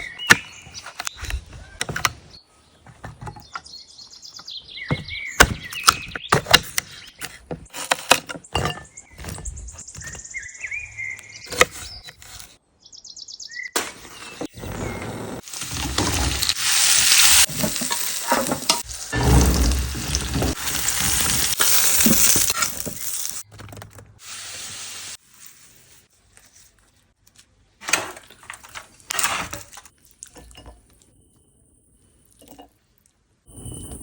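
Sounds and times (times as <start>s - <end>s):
food sizzling in a pan: 15.5s - 23.4s.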